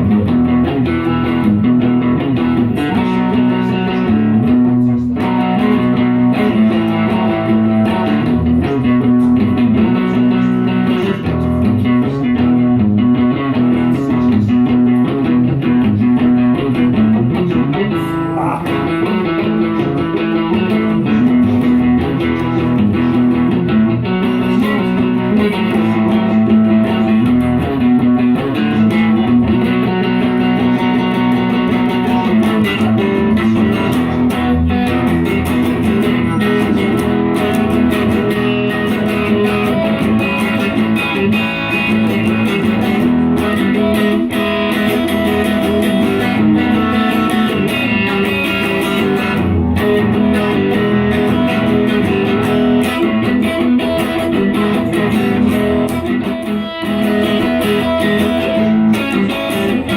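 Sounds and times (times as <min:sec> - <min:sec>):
plucked guitar music: 0:00.0 - 0:59.9.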